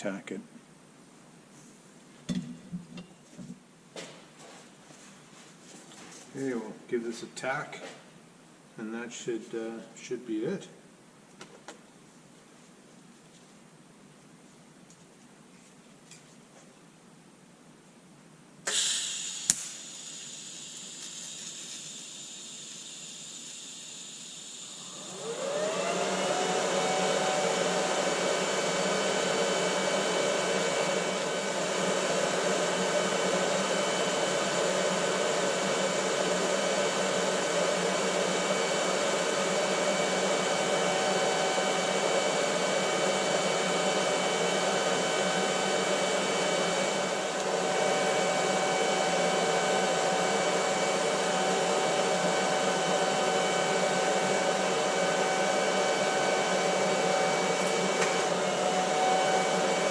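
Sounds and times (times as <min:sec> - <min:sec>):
lathe motor whine: 0:18.7 - 0:59.9.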